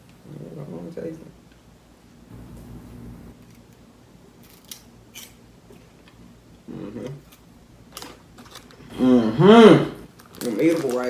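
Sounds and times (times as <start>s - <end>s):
chip bag crackling: 10.1s - 11.0s.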